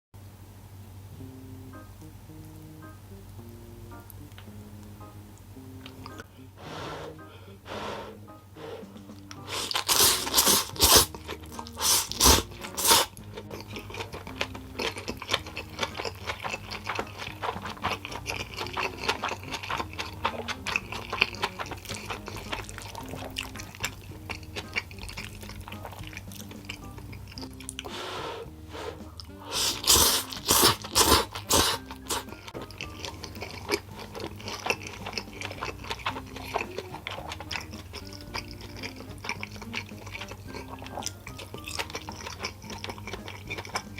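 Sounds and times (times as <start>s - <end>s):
background music: 1.1s - 43.9s
food crackling in hot fat: 8.9s - 43.9s.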